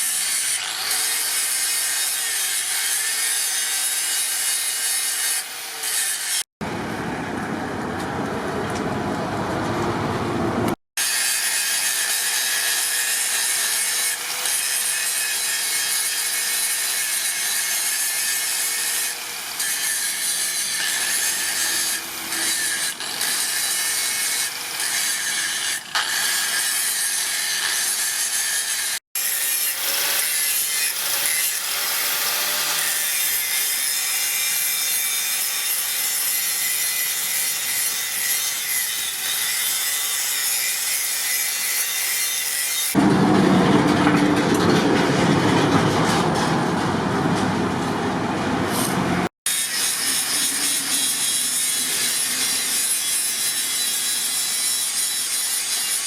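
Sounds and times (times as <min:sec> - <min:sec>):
abrasive rasping on steel: 0:48.7 - 0:56.0.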